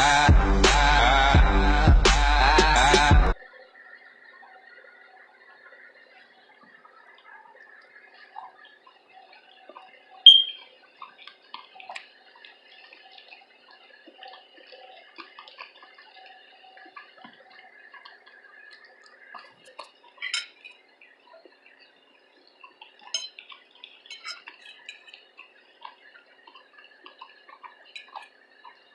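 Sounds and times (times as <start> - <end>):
utensil clinking on dish: 20.2 - 20.6, 24.1 - 25.1
wet mouth clicks and chewing: 24.4 - 28.8.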